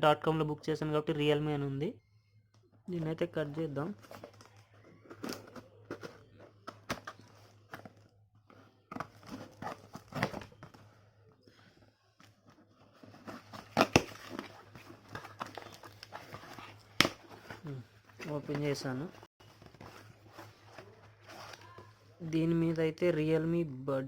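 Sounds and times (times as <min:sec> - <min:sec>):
cardboard parcel tearing: 0:12.8 - 0:17.8.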